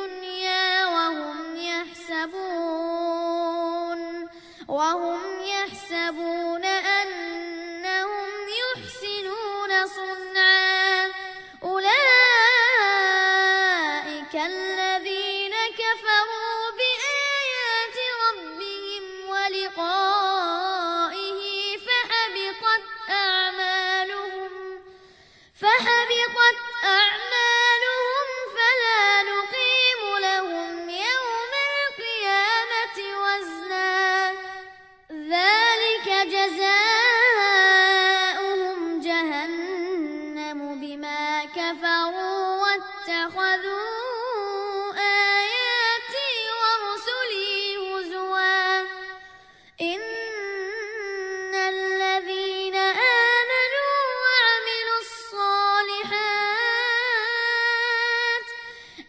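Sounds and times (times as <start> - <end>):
child reciting melodically: 0.0 - 24.9, 25.6 - 49.2, 49.8 - 58.7
child breathing: 58.6 - 59.0.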